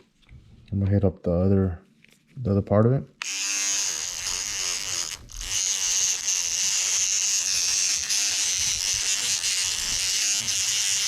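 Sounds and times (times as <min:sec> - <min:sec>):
electric tool buzzing on metal: 0:03.2 - 0:11.0.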